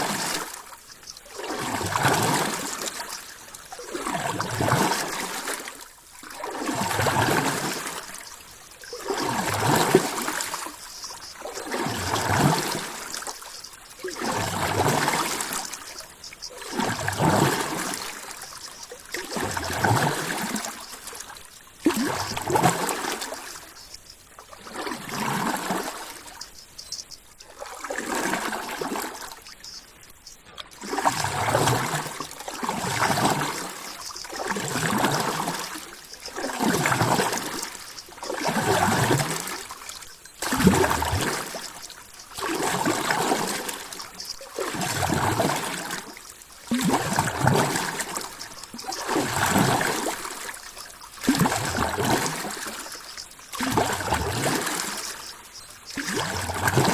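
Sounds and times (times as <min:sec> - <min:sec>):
water sloshing and gurgling: 0:00.0 - 0:56.9.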